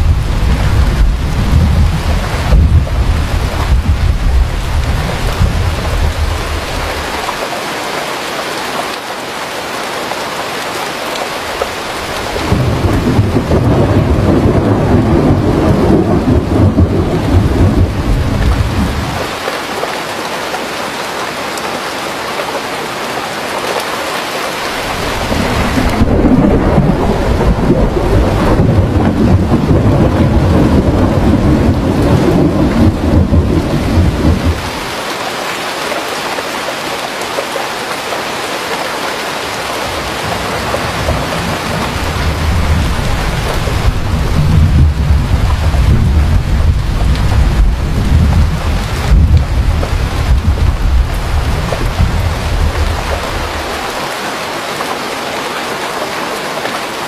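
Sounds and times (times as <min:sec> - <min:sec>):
low thunder rumbling: 0:00.0 - 0:07.2, 0:11.8 - 0:19.4, 0:24.7 - 0:34.9, 0:39.9 - 0:54.0
steady rain falling: 0:00.0 - 0:57.0.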